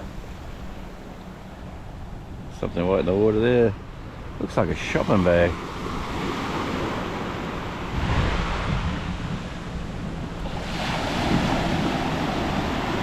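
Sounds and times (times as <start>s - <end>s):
wind buffeting microphone: 0.0s - 13.0s
surf breaking on beach: 4.8s - 13.0s.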